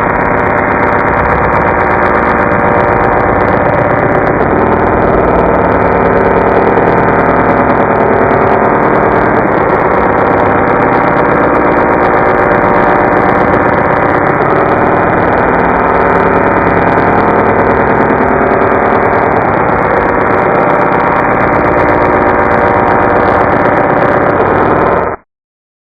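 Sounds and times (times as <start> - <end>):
robotic vocoder drone: 0.0 - 25.2.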